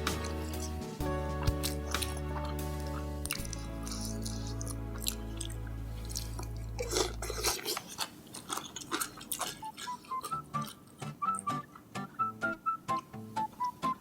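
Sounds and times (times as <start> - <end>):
background music with plucked notes: 0.0 - 7.0, 10.1 - 14.0
chewing and smacking noodles: 1.5 - 11.8.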